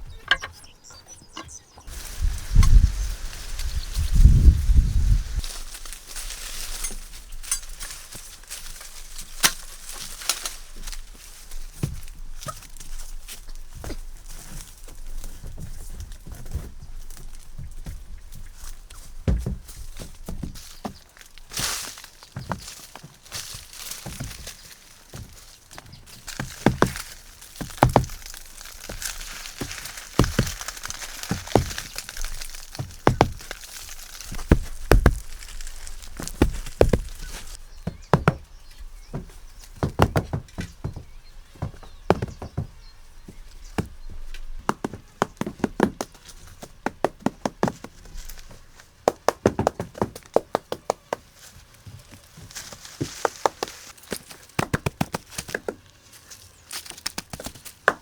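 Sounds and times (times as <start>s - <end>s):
irregular knocks and cracks: 0.3s - 0.6s, 23.5s - 38.5s, 39.1s - 42.7s, 49.1s - 51.2s, 52.9s - 55.8s.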